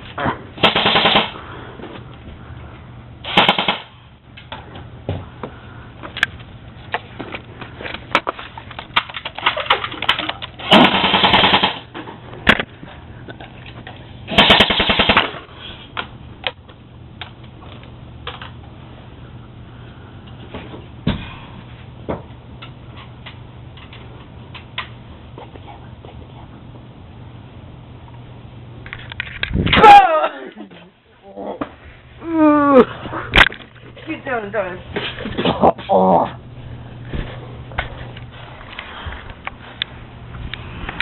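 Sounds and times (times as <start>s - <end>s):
airsoft gun full-auto bursts: 0.6s - 1.4s, 3.2s - 4.0s, 10.6s - 11.9s, 14.3s - 15.4s.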